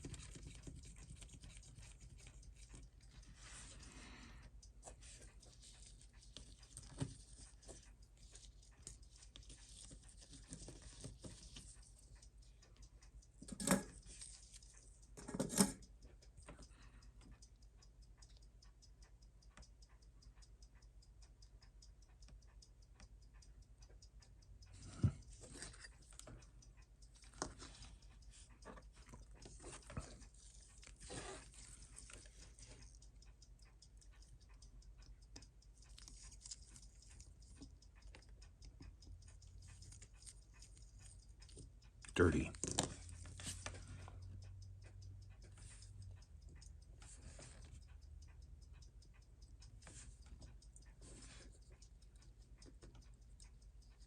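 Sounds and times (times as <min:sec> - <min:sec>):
faint steady hum: 0:00.0 - 0:54.0
small tool clicks and taps: 0:04.9 - 0:18.5, 0:24.7 - 0:54.0.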